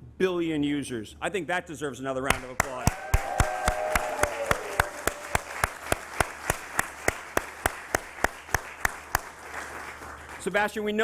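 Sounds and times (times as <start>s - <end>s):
hands clapping close by: 2.3s - 10.7s
fainter clapping: 2.3s - 11.0s.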